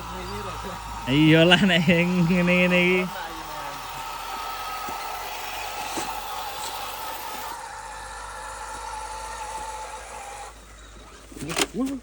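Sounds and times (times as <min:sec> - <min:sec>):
electric motor whining: 0:00.0 - 0:12.0.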